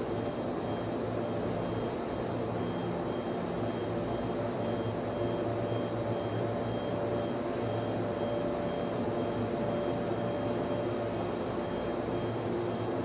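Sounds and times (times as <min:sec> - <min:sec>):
cooling fans whirring and humming: 0:00.0 - 0:13.0.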